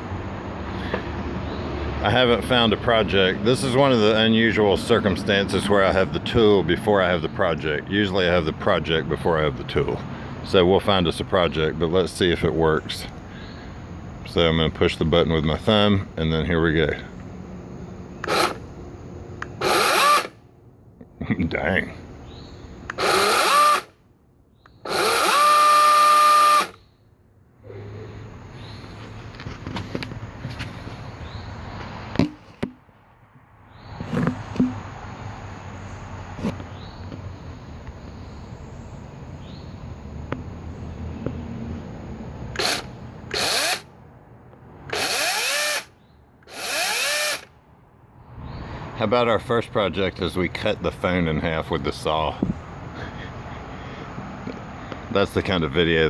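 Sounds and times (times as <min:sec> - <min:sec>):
electric chainsaw whine: 0:18.2 - 0:20.4, 0:22.9 - 0:24.0, 0:24.8 - 0:26.8, 0:42.5 - 0:43.9, 0:44.9 - 0:45.9, 0:46.5 - 0:47.5.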